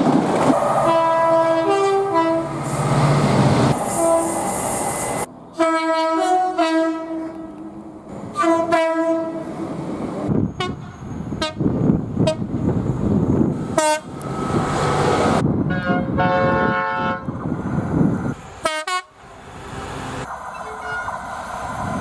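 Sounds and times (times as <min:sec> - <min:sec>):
train rumbling past: 0:00.0 - 0:22.0
train horn blasts: 0:00.8 - 0:02.6, 0:03.8 - 0:04.6, 0:05.6 - 0:07.6, 0:08.3 - 0:09.5, 0:10.6 - 0:12.5, 0:13.8 - 0:14.1, 0:15.7 - 0:17.3, 0:18.6 - 0:19.2.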